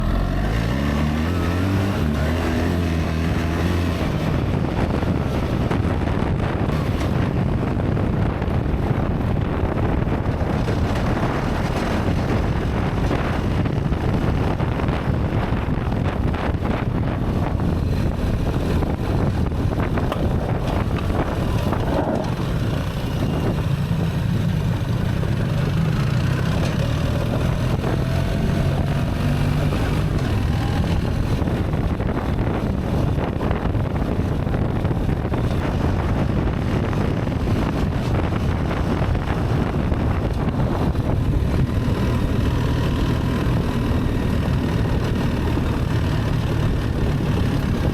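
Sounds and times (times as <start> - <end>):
wind buffeting microphone: 0.0 - 47.9
motorcycle engine running: 0.9 - 47.9
gearbox shifting: 17.4 - 31.4.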